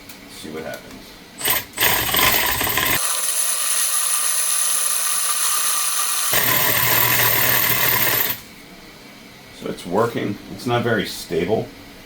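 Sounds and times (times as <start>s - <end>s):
electric drill running: 1.4s - 8.4s.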